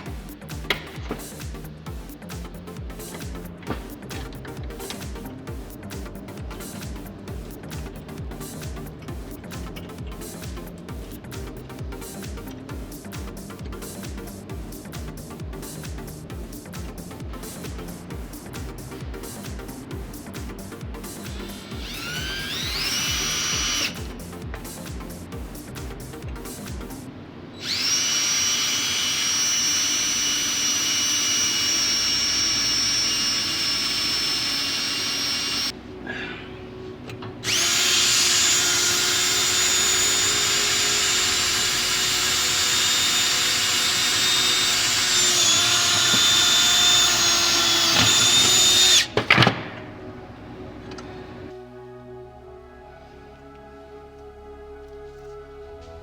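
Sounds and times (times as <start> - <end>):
electric drill boring metal: 21.3 - 24.0, 27.6 - 35.7, 37.4 - 49.2.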